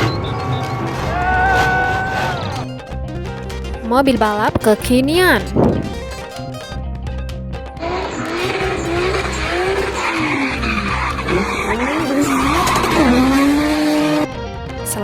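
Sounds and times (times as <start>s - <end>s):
tyres screeching: 0.0s - 2.7s, 7.8s - 14.3s.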